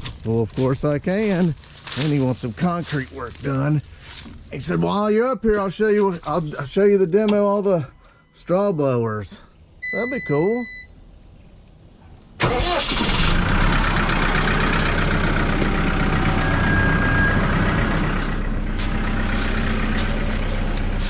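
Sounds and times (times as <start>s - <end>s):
diesel engine cranking and running: 12.4s - 21.0s.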